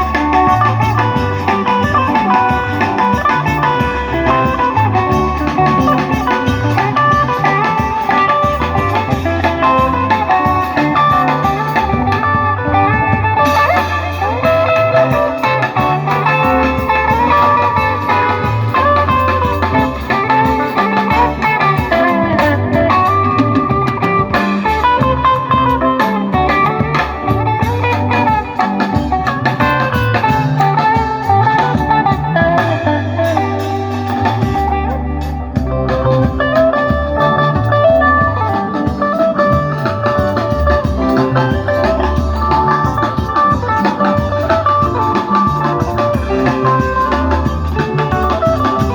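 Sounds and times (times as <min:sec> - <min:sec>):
band playing: 0:00.0 - 0:48.9
bass: 0:00.0 - 0:48.9
drums: 0:00.0 - 0:48.9
guitar lines: 0:00.0 - 0:48.9.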